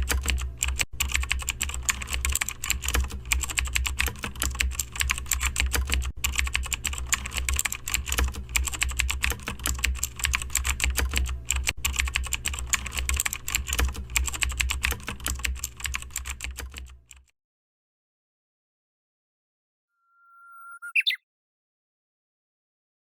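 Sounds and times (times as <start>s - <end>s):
keyboard typing: 0.0s - 17.3s.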